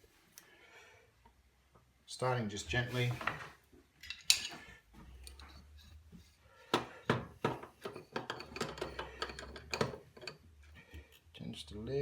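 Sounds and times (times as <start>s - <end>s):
spanner clicking on metal nuts: 7.8s - 10.4s.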